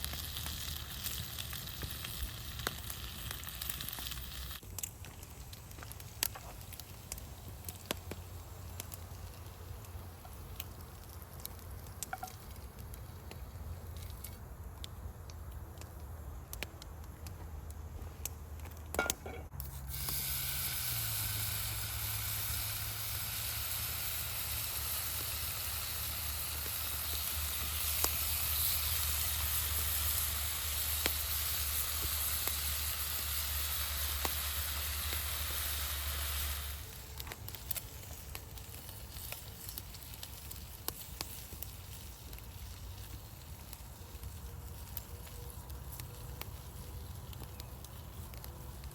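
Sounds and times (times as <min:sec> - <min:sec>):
bacon sizzling in a pan: 0:00.0 - 0:04.6, 0:19.7 - 0:43.0
campfire crackle with pops: 0:00.0 - 0:48.9.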